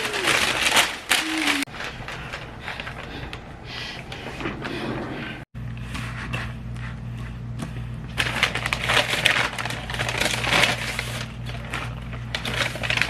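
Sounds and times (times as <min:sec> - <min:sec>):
packaging crinkling: 0:00.0 - 0:03.5, 0:08.2 - 0:13.0
steady low hum: 0:00.0 - 0:13.0.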